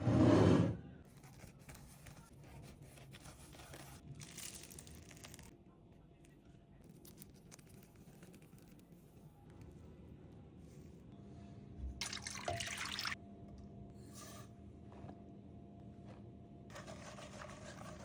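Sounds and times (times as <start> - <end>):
packaging crinkling and tearing: 4.2 - 5.5.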